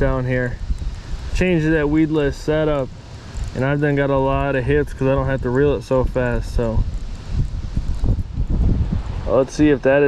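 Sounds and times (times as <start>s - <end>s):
wind buffeting microphone: 0.0s - 10.0s
light rustle: 0.1s - 9.7s.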